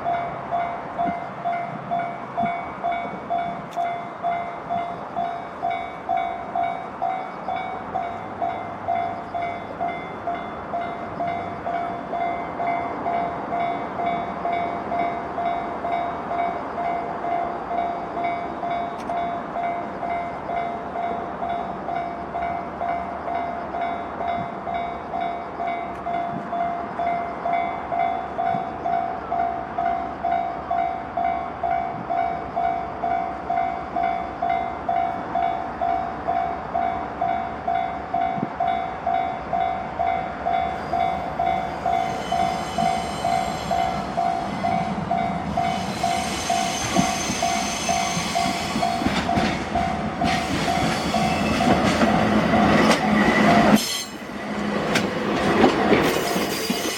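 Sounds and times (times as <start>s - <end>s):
train passing: 0.0s - 56.9s
train wheel clatter: 39.2s - 56.9s.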